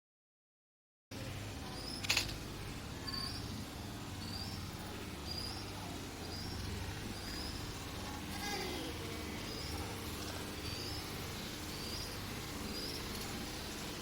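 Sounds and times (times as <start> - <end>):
small animal chirping: 3.0 - 3.6, 4.2 - 4.7, 5.3 - 7.7, 10.6 - 13.4.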